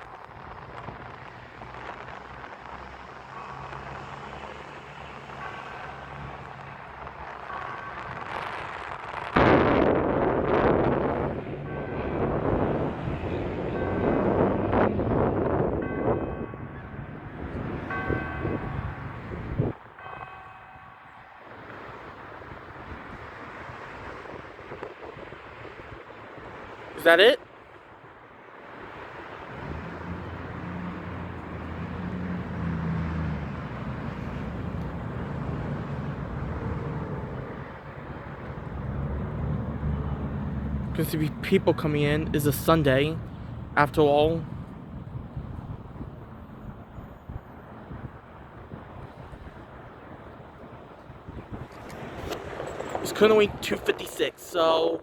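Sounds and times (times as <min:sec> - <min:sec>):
outdoor background noise: 0:00.0 - 0:55.0
church bells ringing: 0:03.2 - 0:09.2, 0:11.5 - 0:23.4.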